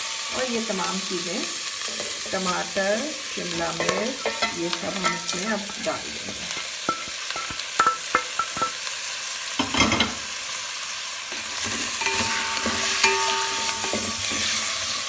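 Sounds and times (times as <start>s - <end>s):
food sizzling in butter: 0.0s - 15.0s
spoon stirring: 3.8s - 5.9s, 11.3s - 15.0s.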